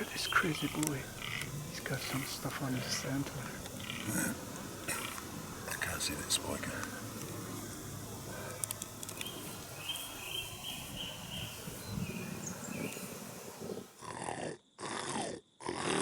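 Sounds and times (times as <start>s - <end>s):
bird chirps: 0.0s - 3.0s, 9.1s - 13.8s
deer groaning calls: 0.0s - 5.8s.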